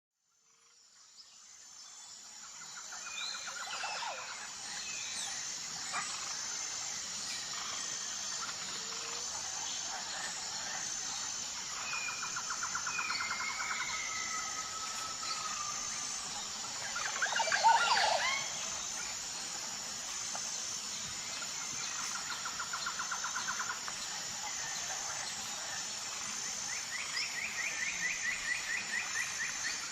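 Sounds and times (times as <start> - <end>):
steady hiss: 0.5 - 29.9
forest birds calling: 0.6 - 29.9.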